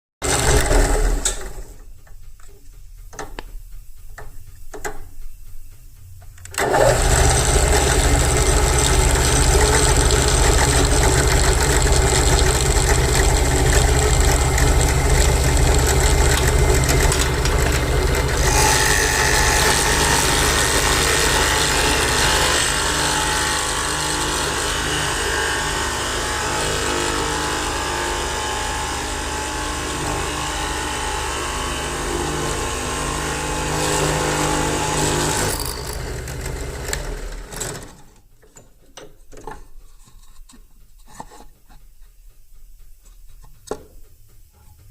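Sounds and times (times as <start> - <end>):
electric drill running: 6.6 - 37.8
harsh bright grinding: 6.7 - 38.1.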